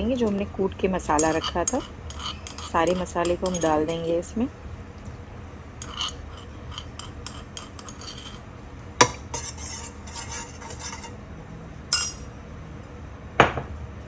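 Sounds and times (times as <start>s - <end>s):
spoon scraping mortar: 0.0s - 4.3s, 5.8s - 11.2s
metal spoon knocking on mortar: 1.1s - 3.9s, 13.4s - 13.8s.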